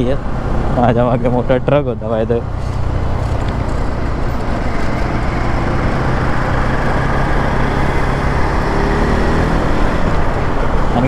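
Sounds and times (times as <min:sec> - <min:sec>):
wind and road noise: 0:00.0 - 0:11.0
motorcycle engine running: 0:02.3 - 0:11.0.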